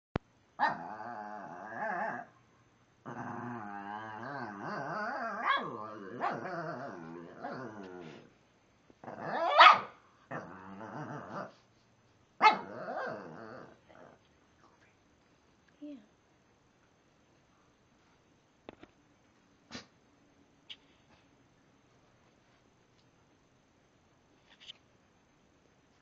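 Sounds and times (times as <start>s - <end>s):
dog grumbling growls: 0.6s - 2.3s, 3.0s - 8.3s, 9.0s - 9.5s, 10.3s - 11.6s, 12.6s - 14.2s
dog barking sharply: 9.6s - 10.0s.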